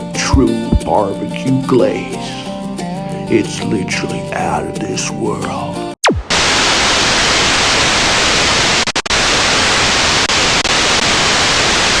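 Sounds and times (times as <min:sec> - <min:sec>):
loud static hiss: 0:06.3 - 0:12.0.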